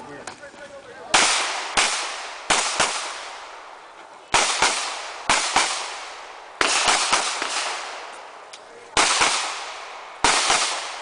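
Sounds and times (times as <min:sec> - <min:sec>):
pistol shots with echo: 0:01.1 - 0:03.6, 0:04.3 - 0:08.1, 0:08.9 - 0:11.0.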